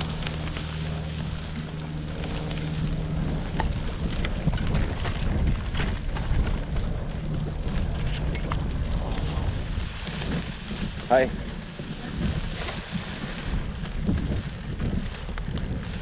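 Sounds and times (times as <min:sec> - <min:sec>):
low hum: 0:00.0 - 0:12.0
bicycle rattling over dirt trail: 0:00.0 - 0:16.0
wind buffeting microphone: 0:00.0 - 0:16.0.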